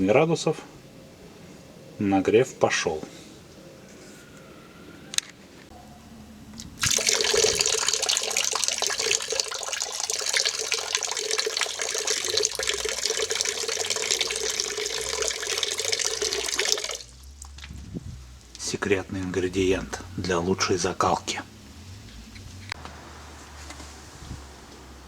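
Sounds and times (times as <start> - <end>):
water running from a tap: 6.8 - 17.5.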